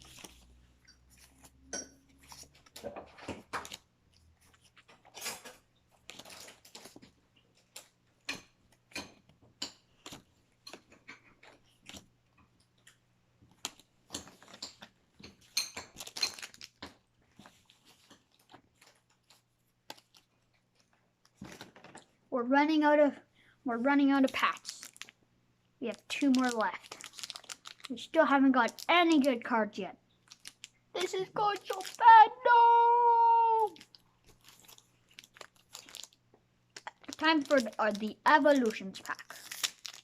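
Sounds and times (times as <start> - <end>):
trading cards clicking and rustling: 2.2 - 12.7, 25.9 - 27.9, 30.2 - 32.2, 36.8 - 40.0.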